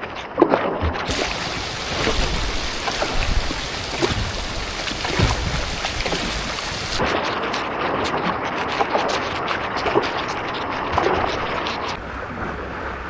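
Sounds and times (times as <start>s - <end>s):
heavy rain hissing: 1.1s - 7.0s
wind buffeting microphone: 1.1s - 7.0s
sea waves splashing: 1.1s - 7.1s.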